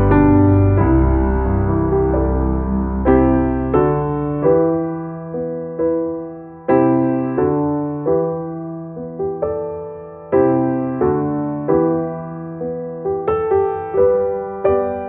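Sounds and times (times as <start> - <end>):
soft piano playing slow chords: 0.0 - 15.0.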